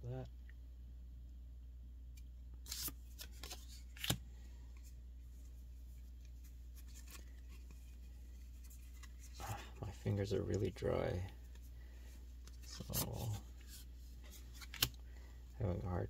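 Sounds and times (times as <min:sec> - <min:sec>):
playing cards sliding: 0:02.6 - 0:04.2, 0:06.2 - 0:09.5, 0:11.4 - 0:15.0
card snaps: 0:02.7 - 0:04.2, 0:14.5 - 0:15.0.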